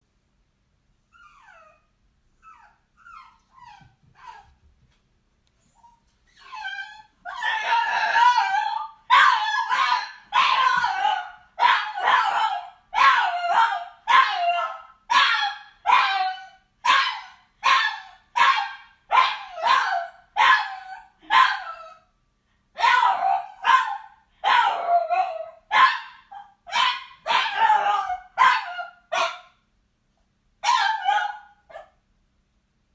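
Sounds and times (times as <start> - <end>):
dog whining barks: 5.9 - 22.1, 22.8 - 29.5, 30.6 - 32.0.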